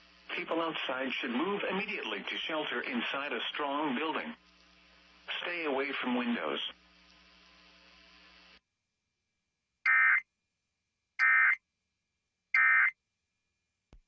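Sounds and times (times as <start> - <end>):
faint radio hiss and hum: 0.0 - 8.6
digital data bursts: 9.9 - 10.2, 11.2 - 11.6, 12.6 - 12.9.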